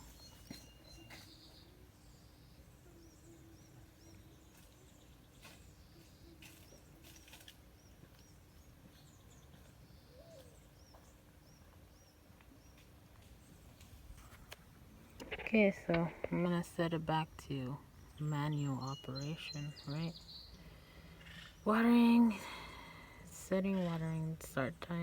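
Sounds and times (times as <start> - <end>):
small bird chirping: 0.0 - 22.5
faint steady hum: 0.0 - 25.0.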